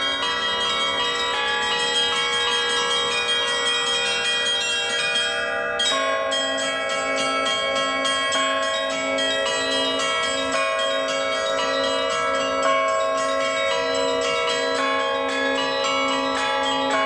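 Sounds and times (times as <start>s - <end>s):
deeper bell: 0.0s - 17.0s
middle bells ringing: 0.0s - 17.0s
small bells striking quickly: 0.0s - 17.0s.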